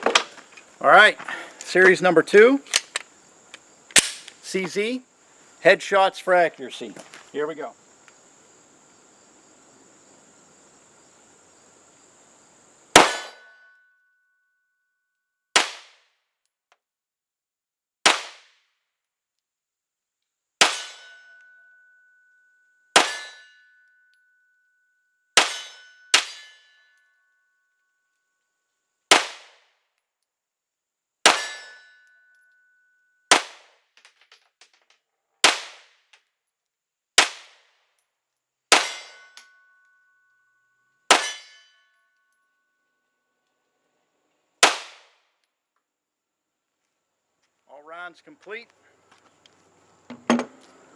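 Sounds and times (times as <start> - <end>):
pistol shots: 4.0 - 4.4, 13.0 - 13.4, 33.3 - 33.7.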